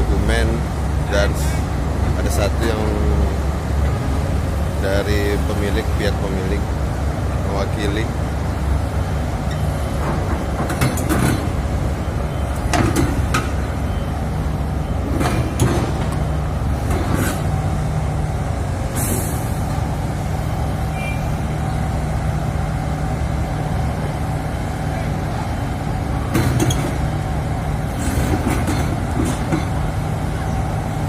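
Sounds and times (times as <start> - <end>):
diesel engine idling: 0.0 - 31.0
metallic knocks and clanks: 9.5 - 11.6, 12.7 - 13.6, 15.2 - 16.2, 26.3 - 27.0.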